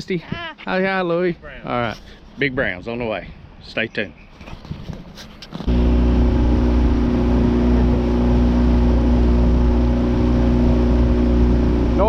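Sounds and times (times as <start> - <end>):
boat motor running: 5.6 - 12.0.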